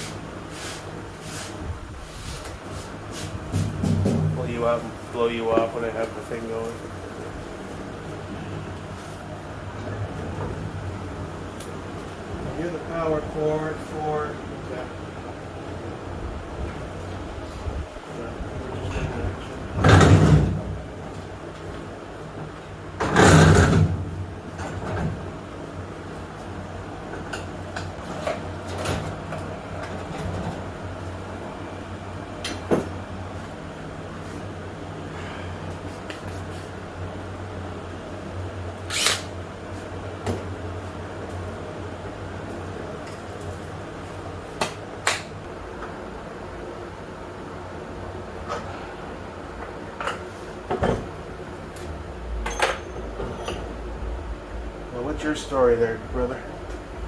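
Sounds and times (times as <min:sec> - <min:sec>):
air blasts from blower: 0:00.0 - 0:09.4
blower low hum: 0:00.0 - 0:57.0.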